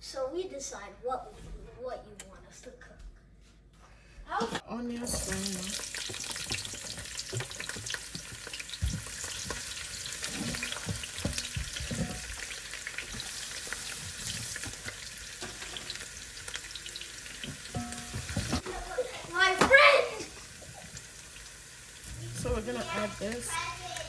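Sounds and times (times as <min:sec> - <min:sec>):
spoon stirring and knocking pot: 0:05.0 - 0:16.0, 0:17.4 - 0:18.6
onions sizzling in hot oil: 0:05.0 - 0:24.0.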